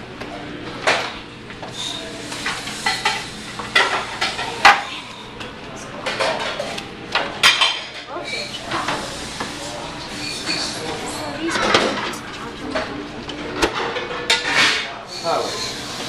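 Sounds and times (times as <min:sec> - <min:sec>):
metal utensils and dishes clinking: 0:10.1 - 0:15.9.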